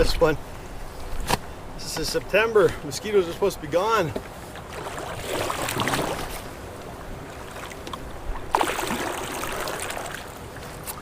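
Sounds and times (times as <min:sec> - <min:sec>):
water sloshing around canoe: 0:04.0 - 0:11.0
loud splash: 0:04.7 - 0:06.3, 0:08.5 - 0:10.3.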